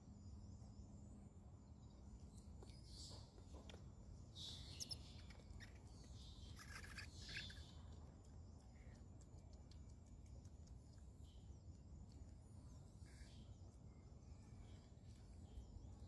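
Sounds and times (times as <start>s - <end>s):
low steady hum: 0.0s - 16.0s
high-pitched chirping calls: 4.4s - 8.0s.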